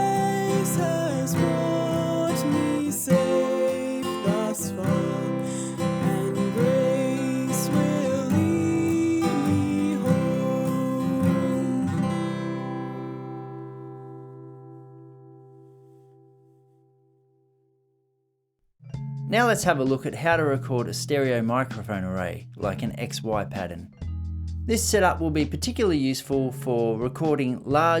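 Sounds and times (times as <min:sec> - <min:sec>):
acoustic guitar strumming chords: 0:00.0 - 0:17.0.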